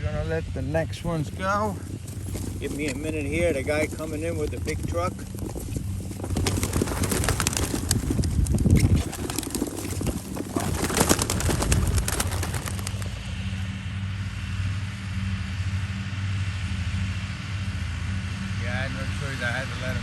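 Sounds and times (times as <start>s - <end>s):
vehicle engine humming: 0.4s - 20.0s
pigeons wings flapping: 1.1s - 13.4s.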